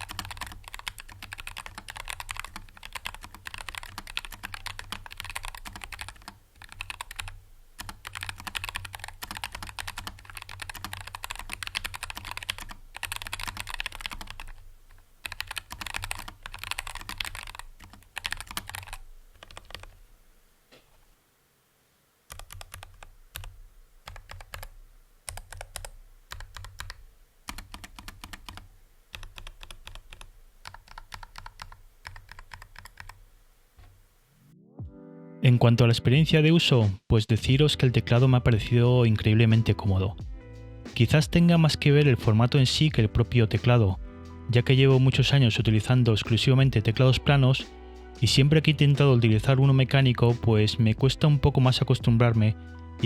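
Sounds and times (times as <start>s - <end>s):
mechanical keyboard typing: 0.0s - 20.0s, 22.3s - 33.2s.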